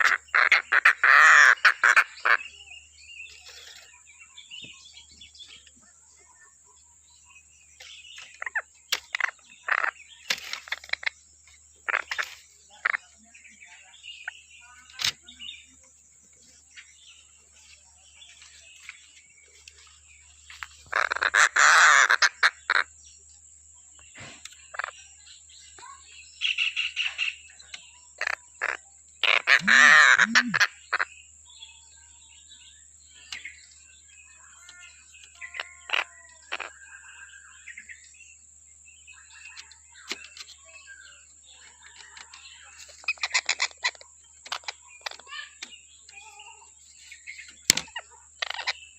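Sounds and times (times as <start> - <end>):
bird chirps and call notes: 0.0 - 48.9
kingfisher rattling call: 28.2 - 31.0.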